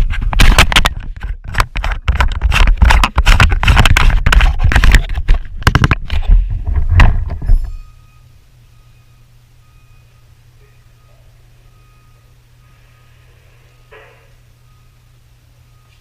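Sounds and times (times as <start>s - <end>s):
faint electronic beeps: 7.5s - 16.0s.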